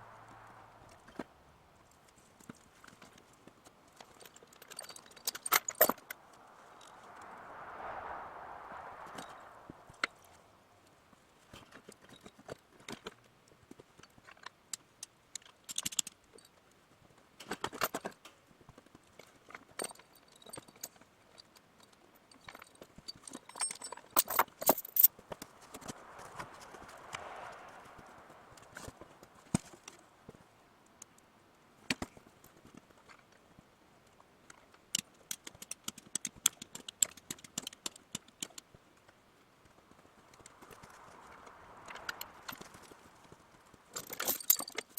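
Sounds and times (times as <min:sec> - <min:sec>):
soft swelling noise: 0:06.2 - 0:10.8
hand tools clinking on metal: 0:43.9 - 0:44.9.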